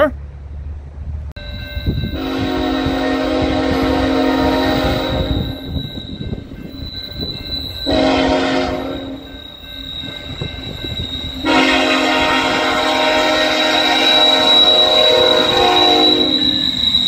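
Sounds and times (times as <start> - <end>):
passing train rumble: 0.0 - 17.0
locomotive air horn blasts: 2.1 - 5.6, 7.9 - 9.2, 11.4 - 16.6.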